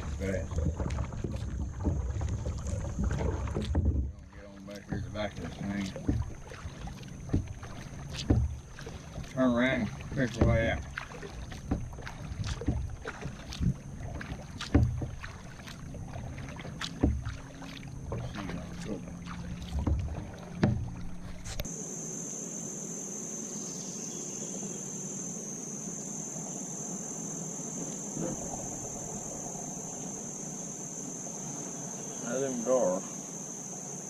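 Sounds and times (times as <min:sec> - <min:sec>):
paddle strokes and splashes: 0:00.0 - 0:22.6, 0:24.4 - 0:34.0
insects droning: 0:00.0 - 0:34.0
knocks against kayak hull: 0:00.5 - 0:21.7.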